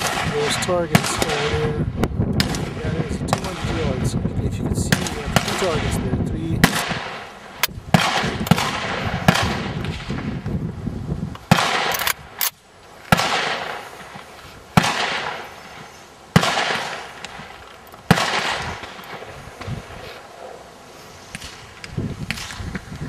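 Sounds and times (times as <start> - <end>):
rifle shots echoing: 0.0 - 1.8, 2.4 - 4.0, 4.8 - 10.4, 11.5 - 12.5, 13.1 - 20.0.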